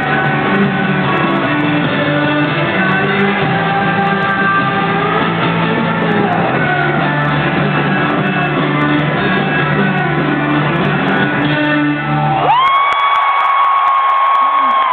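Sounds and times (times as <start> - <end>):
live band playing: 0.0 - 12.5.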